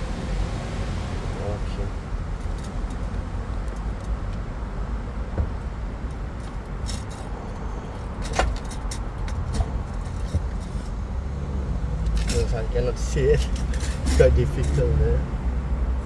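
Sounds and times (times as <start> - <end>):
small metal parts clicking and clinking: 13.4 - 14.9.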